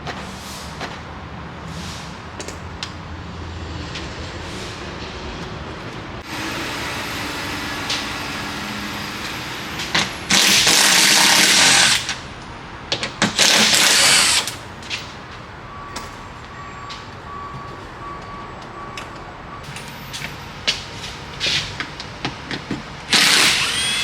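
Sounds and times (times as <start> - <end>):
power tool running: 6.2 - 12.2, 13.2 - 14.6, 23.1 - 24.0.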